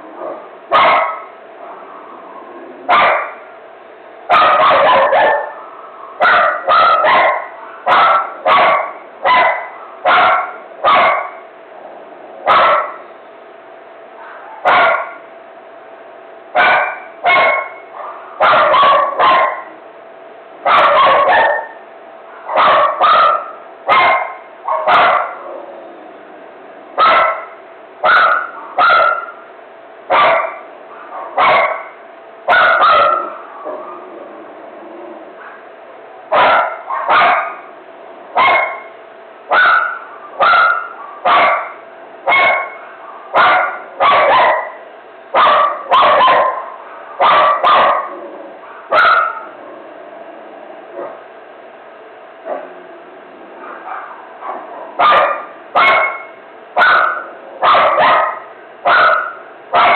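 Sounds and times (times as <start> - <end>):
faint steady hum: 0.0 - 59.9
dog barking frantically: 0.2 - 1.4, 2.8 - 3.5, 4.3 - 11.5, 12.4 - 13.1, 14.2 - 15.3, 16.5 - 19.8, 20.6 - 25.6, 27.0 - 29.5, 30.1 - 34.1, 36.3 - 49.6, 53.6 - 59.9.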